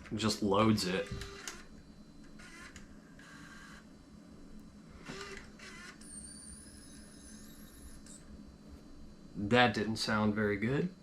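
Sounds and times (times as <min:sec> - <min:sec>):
thin high whine: 0:00.0 - 0:11.0
small motor and gear whirring: 0:01.0 - 0:03.8, 0:05.0 - 0:08.3.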